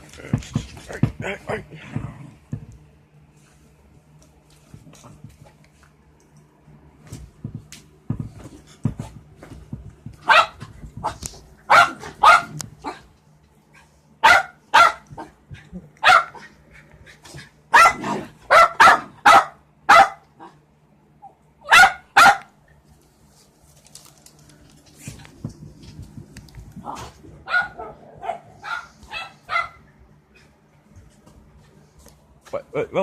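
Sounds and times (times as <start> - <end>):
dog barking: 10.2 - 13.0, 14.2 - 15.4, 16.0 - 16.5, 17.7 - 20.3, 21.6 - 22.5, 27.4 - 29.8.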